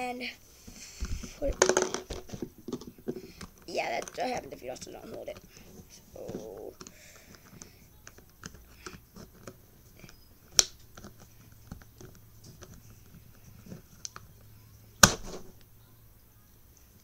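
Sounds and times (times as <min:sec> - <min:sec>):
plastic cube pieces clicking and scraping: 0:01.0 - 0:14.3
sharp plastic snaps: 0:06.8 - 0:12.8.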